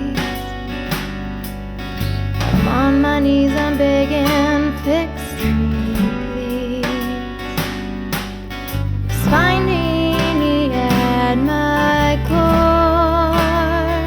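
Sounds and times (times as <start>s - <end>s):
person singing: 0.0s - 0.9s, 2.6s - 8.0s, 9.2s - 14.0s
strummed acoustic guitar: 0.0s - 14.0s.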